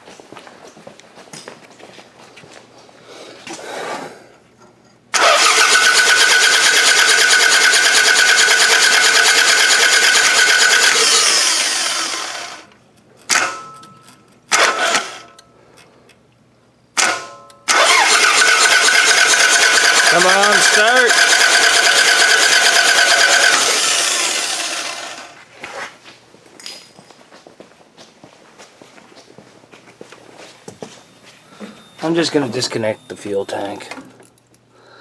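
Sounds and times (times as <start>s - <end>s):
car engine cranking by starter: 5.2s - 12.7s, 17.7s - 25.3s.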